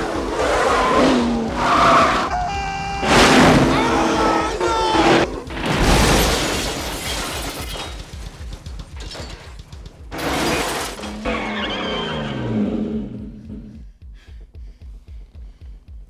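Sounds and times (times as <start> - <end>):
car crash: 0.0 - 13.2
dramatic film score: 0.0 - 15.3
glass shattering: 3.0 - 12.1.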